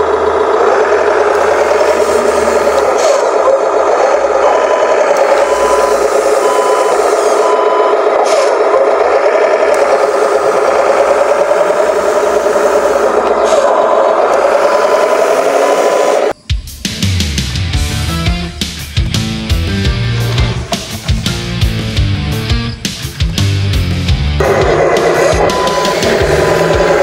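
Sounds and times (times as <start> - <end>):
model truck motor whine: 0.0 - 16.4, 24.4 - 27.0
reversing beeps: 4.4 - 8.2, 11.6 - 16.5, 25.2 - 27.0.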